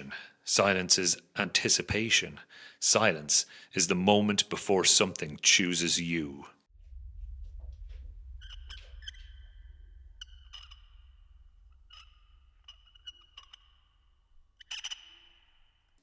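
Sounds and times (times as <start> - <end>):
low rumbling drone: 6.7 - 14.6.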